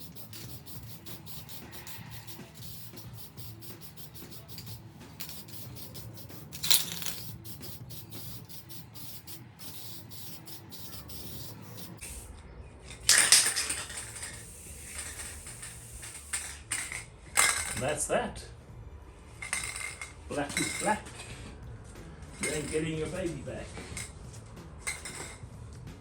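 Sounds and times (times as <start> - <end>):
spray paint can hissing: 0.0 - 12.3, 13.2 - 16.8.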